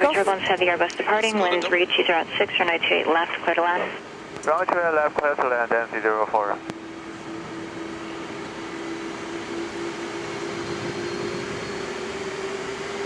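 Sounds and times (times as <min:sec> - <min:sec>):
jet engines spooling up: 0:06.7 - 0:13.0.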